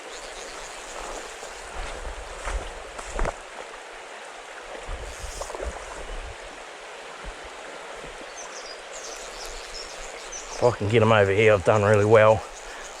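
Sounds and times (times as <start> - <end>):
flowing stream: 0.0 - 13.0.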